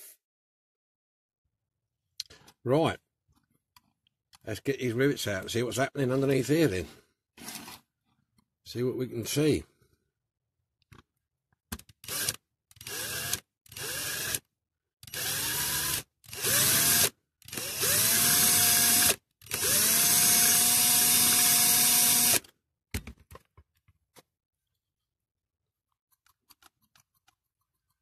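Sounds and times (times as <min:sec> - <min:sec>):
electric drill spinning: 0:12.0 - 0:14.4, 0:15.0 - 0:22.5.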